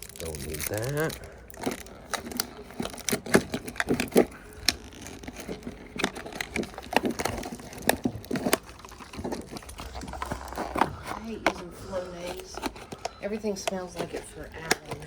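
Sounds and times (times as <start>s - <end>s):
lock parts clicking and knocking: 1.5s - 11.7s.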